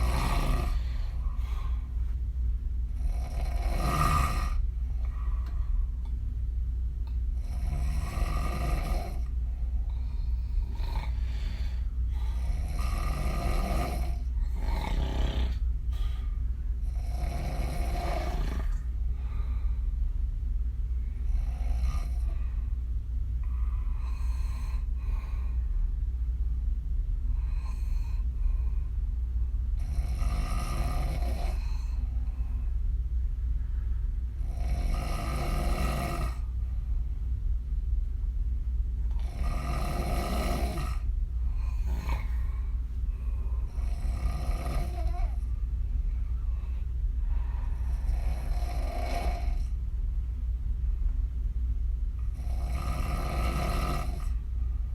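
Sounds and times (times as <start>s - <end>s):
woman snoring: 0.0s - 1.6s, 3.0s - 4.6s, 7.4s - 9.3s, 10.2s - 16.1s, 16.8s - 18.8s, 21.2s - 22.4s, 29.8s - 32.1s, 34.4s - 36.5s, 39.1s - 42.5s, 43.6s - 45.5s, 47.6s - 49.8s, 52.2s - 54.4s
steady low hum: 0.0s - 54.9s.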